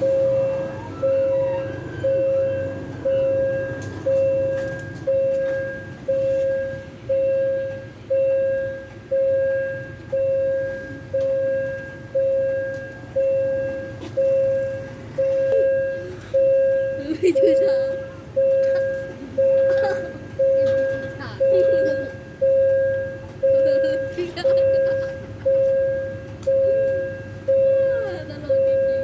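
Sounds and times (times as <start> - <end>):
railway warning bell ringing: 0.0 - 29.0.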